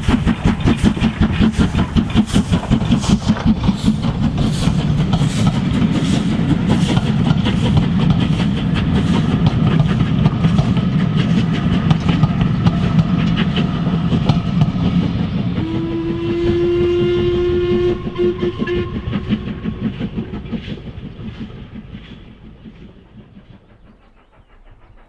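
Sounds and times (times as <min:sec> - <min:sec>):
steam locomotive exhaust beating: 0:00.0 - 0:25.0
steam whistle long note: 0:15.6 - 0:20.2.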